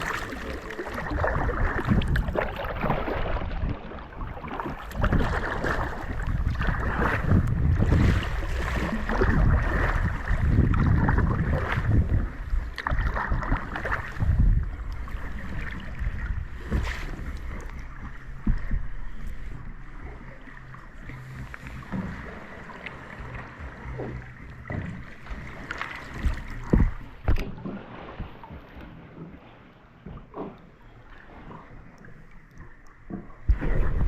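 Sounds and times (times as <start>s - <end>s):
water splashing and rushing: 0.0s - 34.0s
wind buffeting microphone: 1.0s - 20.3s, 23.2s - 28.7s.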